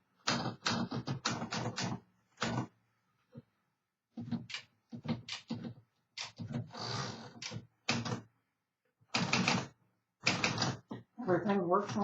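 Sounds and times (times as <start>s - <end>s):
manual typewriter clacking: 9.2s - 10.9s.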